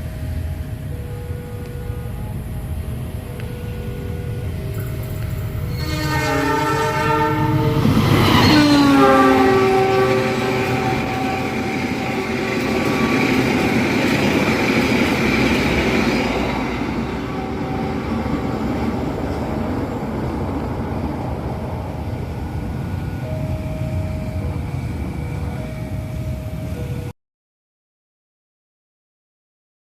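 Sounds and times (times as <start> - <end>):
train carriages rumbling on rails: 0.0 - 27.1
train horn: 0.9 - 20.0.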